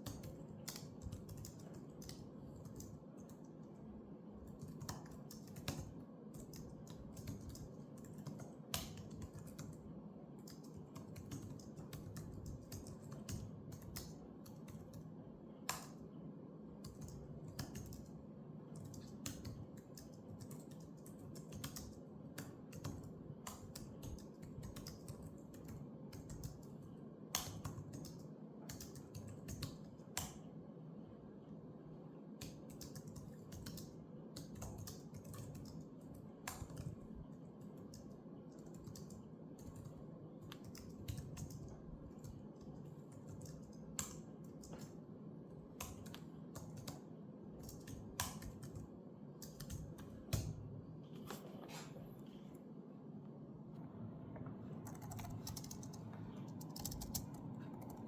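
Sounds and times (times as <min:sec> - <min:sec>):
computer keyboard typing: 0:00.0 - 0:16.0, 0:16.8 - 0:30.4, 0:32.4 - 0:45.0, 0:45.6 - 0:50.6, 0:54.7 - 0:58.0
low background hum: 0:00.0 - 0:58.0.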